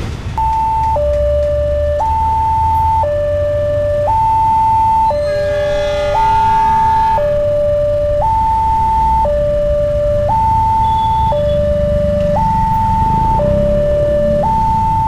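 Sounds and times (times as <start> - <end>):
two-tone crossing alarm: 0.4 - 15.0
low rumble: 4.6 - 9.9.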